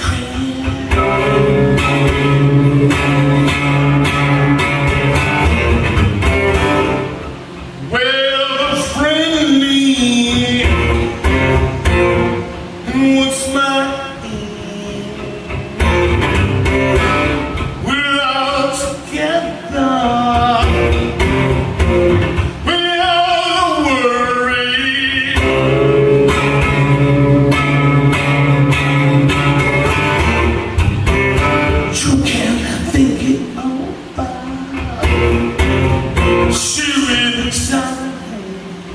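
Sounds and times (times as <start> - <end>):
man singing: 0.0 - 4.6, 7.8 - 11.2, 12.8 - 16.2, 17.8 - 21.2, 22.6 - 25.8, 31.9 - 35.4, 36.4 - 38.9
acoustic guitar strummed and picked: 0.0 - 38.9.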